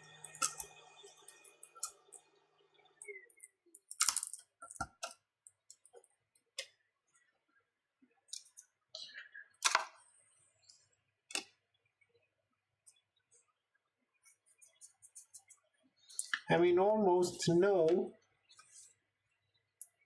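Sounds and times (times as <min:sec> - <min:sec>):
small tools clicking and tapping: 0:00.2 - 0:02.3, 0:03.0 - 0:06.7.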